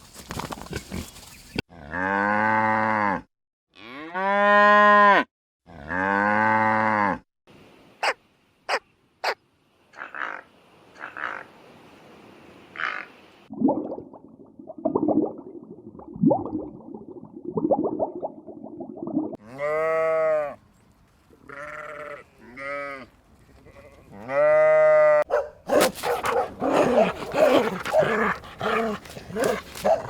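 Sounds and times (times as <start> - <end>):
rough animal sounds: 0.4 - 2.6, 10.0 - 11.5, 21.5 - 30.0
sheep bleating: 19.4 - 20.6, 21.4 - 25.2
dog barking: 25.3 - 30.0.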